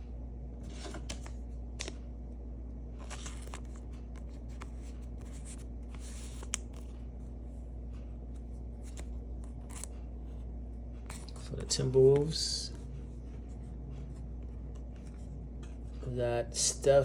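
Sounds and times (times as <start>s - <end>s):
steady low hum: 0.0s - 17.0s
cards sliding and rustling: 3.0s - 7.0s, 8.8s - 10.0s.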